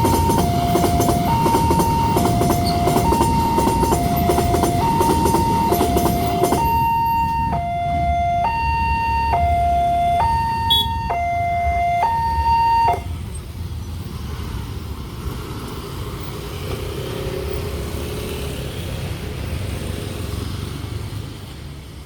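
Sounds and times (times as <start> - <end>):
level crossing two-tone alarm: 0.0 - 13.1.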